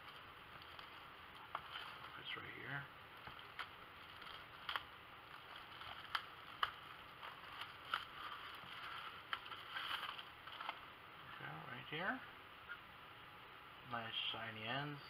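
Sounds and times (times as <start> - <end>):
light rustling of handling: 0.0 - 10.8.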